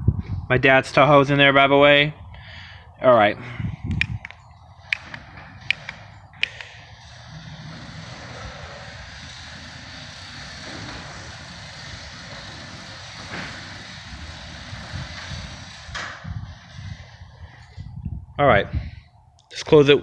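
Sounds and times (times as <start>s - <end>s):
garage door opener motor humming: 4.8s - 17.3s
garage door rolling: 4.8s - 17.6s.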